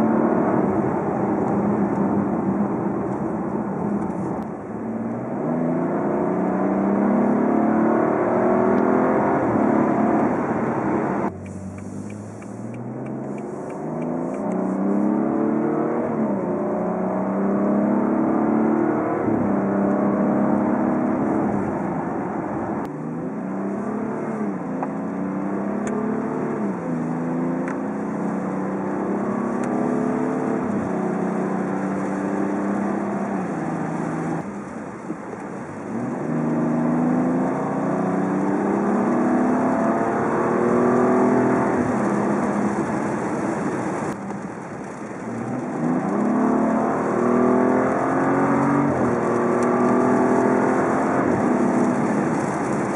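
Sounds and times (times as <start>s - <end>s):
car engine revving: 0.0s - 52.9s.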